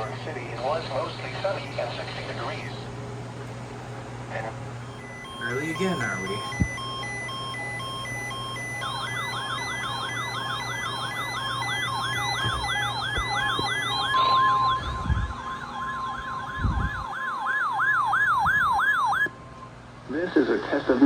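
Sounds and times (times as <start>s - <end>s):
steady warning alarm tone: 4.8s - 19.8s
siren-like sweeping alarm tone: 4.9s - 19.5s.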